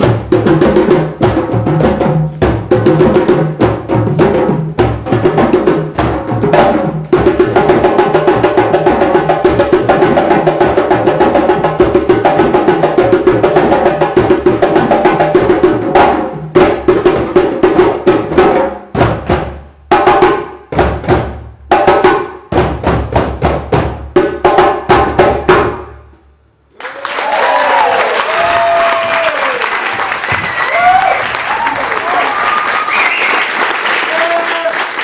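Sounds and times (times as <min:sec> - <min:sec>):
drumming group playing: 0:00.0 - 0:26.0, 0:27.7 - 0:34.7.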